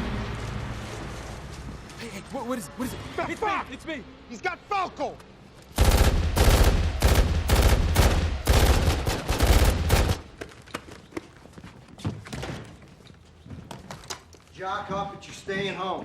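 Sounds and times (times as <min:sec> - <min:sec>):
automatic gunfire bursts: 0:05.8 - 0:10.2.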